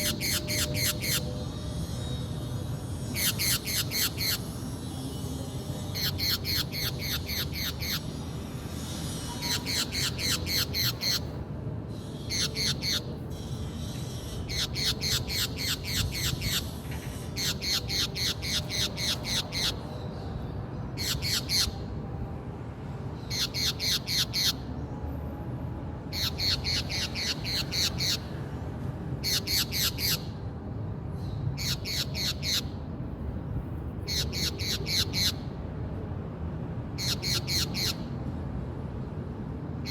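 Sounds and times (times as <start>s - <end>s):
parakeet squawking: 0.0s - 1.3s, 3.1s - 4.6s, 6.0s - 8.2s, 9.4s - 11.4s, 12.3s - 13.2s, 14.0s - 19.9s, 21.0s - 21.8s, 23.3s - 24.7s, 26.1s - 28.3s, 29.2s - 30.4s, 31.6s - 32.8s, 34.1s - 35.5s, 37.0s - 38.1s.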